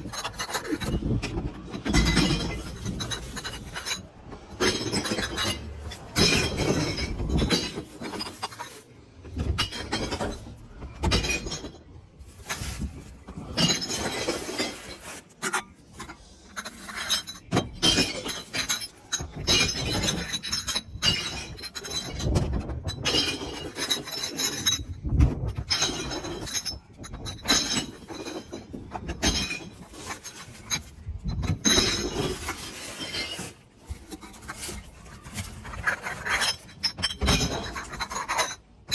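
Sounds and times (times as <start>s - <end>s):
glass bottles crashing in bin: 4.6s - 8.8s, 9.4s - 15.2s, 25.6s - 33.6s, 36.4s - 38.3s.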